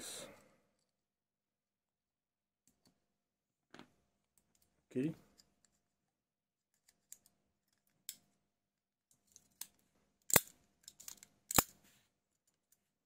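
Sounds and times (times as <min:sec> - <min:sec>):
knife mechanism sharp snaps: 0:11.5 - 0:11.7.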